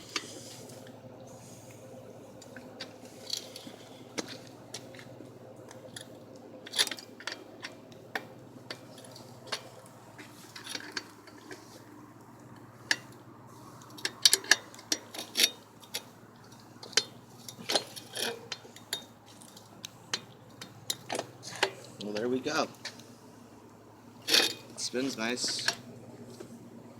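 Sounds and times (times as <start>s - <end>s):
metallic clicks and knocks from tools: 13.9s - 23.0s.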